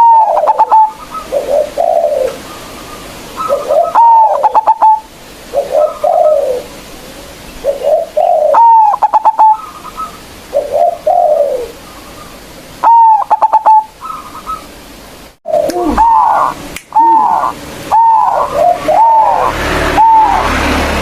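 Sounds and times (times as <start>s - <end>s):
soft low dove coos: 0.0s - 2.7s, 3.4s - 6.9s, 7.6s - 11.8s, 15.5s - 20.7s
dove singing loud phrases: 0.0s - 14.7s, 15.5s - 21.0s.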